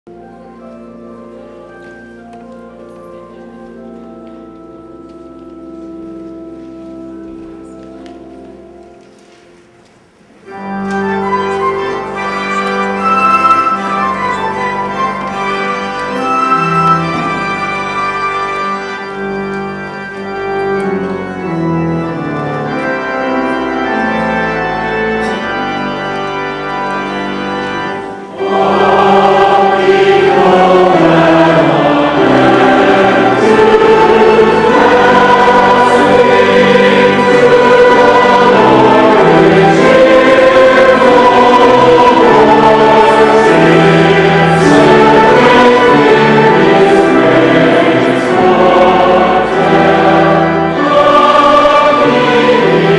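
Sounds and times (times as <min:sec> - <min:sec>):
organ playing: 0:00.1 - 0:52.9
choir singing: 0:10.5 - 0:52.9.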